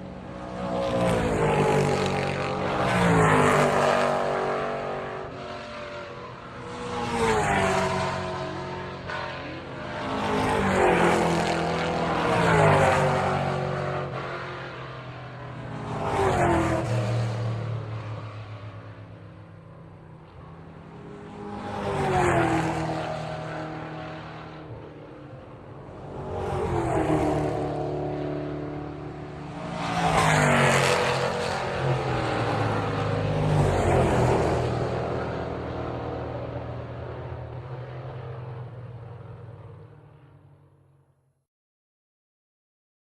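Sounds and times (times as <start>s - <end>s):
race cars passing by: 0.0s - 40.9s.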